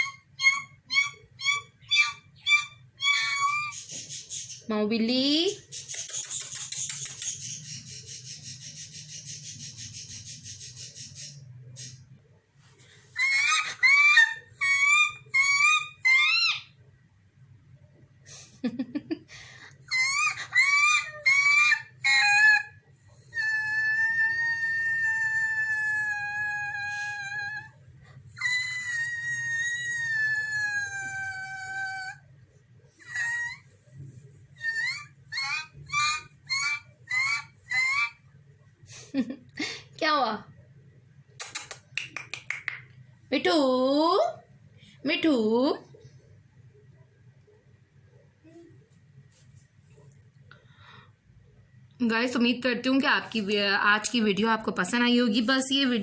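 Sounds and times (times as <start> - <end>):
parrot calling: 0.0 - 4.7, 13.2 - 16.8, 19.9 - 27.7, 28.4 - 32.2, 33.0 - 33.7, 34.6 - 38.3.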